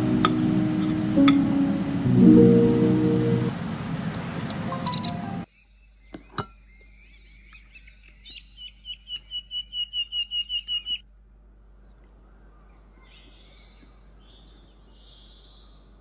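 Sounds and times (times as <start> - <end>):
small bird chirping: 4.8 - 11.0.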